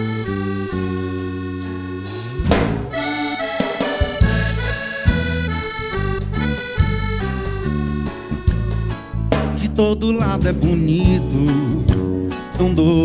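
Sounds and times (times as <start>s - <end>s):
accordion melody: 0.0s - 13.0s
bass and drum groove: 0.0s - 13.0s
loud band hit: 2.4s - 5.4s, 9.3s - 9.8s.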